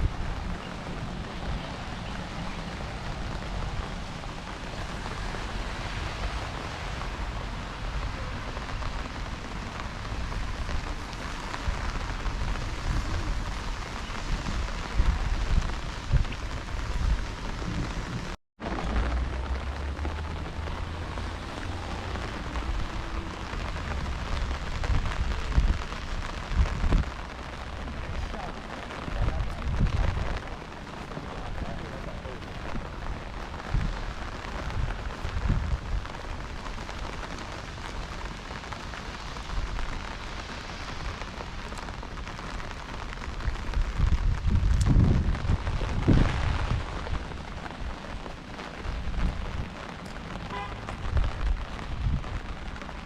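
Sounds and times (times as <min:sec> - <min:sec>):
heavy rain: 0:00.0 - 0:53.0.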